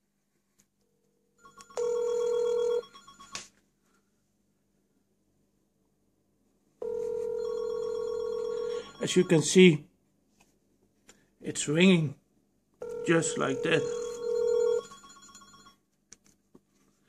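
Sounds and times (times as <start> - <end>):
phone ringing electronically: 1.4 - 3.6, 6.8 - 9.8, 12.8 - 15.8.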